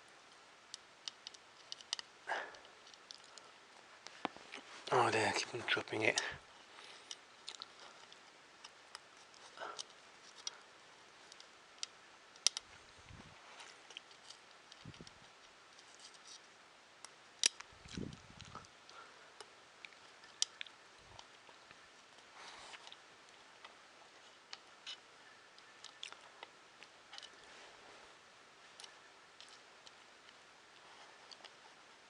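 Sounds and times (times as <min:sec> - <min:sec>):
small plastic parts clicking: 0:00.7 - 0:03.5, 0:07.1 - 0:10.6, 0:11.3 - 0:12.7, 0:27.1 - 0:27.4.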